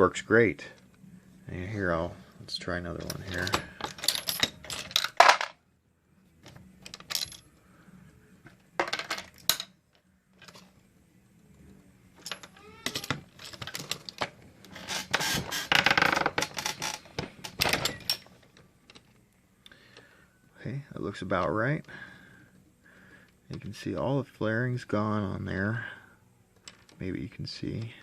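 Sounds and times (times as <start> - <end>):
metal cartridge cases clinking: 3.0 - 5.6, 6.8 - 7.5, 12.2 - 14.4, 17.5 - 19.1.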